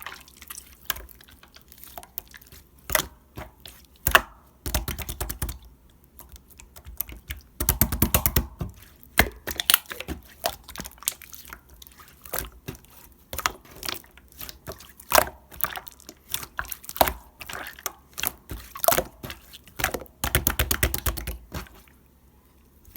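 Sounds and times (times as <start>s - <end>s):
jelly squeezed with wet clicks: 9.2s - 12.6s.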